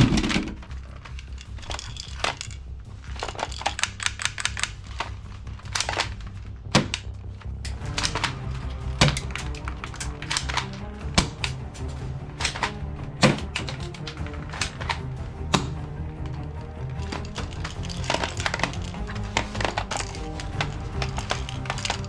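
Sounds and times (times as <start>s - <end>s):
sharp clicks and knocks: 0.0s - 7.1s, 7.7s - 15.8s
background music: 0.0s - 22.0s.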